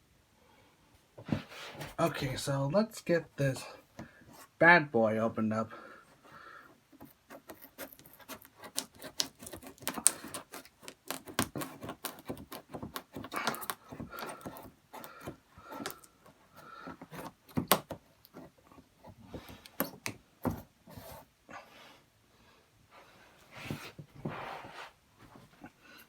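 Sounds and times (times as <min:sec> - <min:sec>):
cardboard and plastic rustling: 0:07.0 - 0:21.3.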